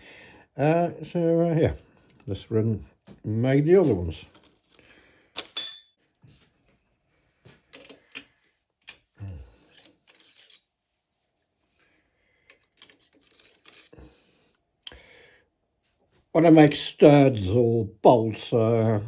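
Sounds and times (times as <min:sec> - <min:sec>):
metal tools clicking: 0:09.6 - 0:10.6, 0:12.5 - 0:14.0.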